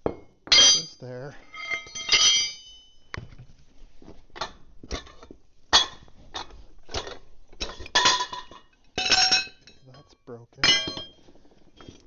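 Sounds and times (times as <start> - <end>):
steel parts clinking and clanking: 0.1 - 3.1, 4.4 - 12.0.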